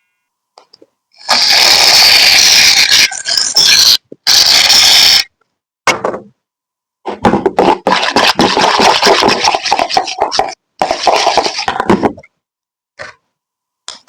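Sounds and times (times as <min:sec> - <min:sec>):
slime squishing and scraping: 0:07.6 - 0:12.2.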